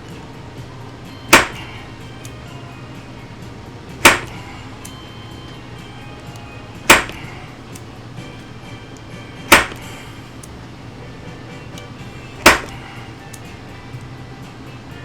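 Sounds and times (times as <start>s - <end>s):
steady low hum: 0.0s - 15.0s
sharp knocks: 1.3s - 1.8s, 4.0s - 4.5s, 6.9s - 7.3s, 9.5s - 10.0s, 12.4s - 12.9s.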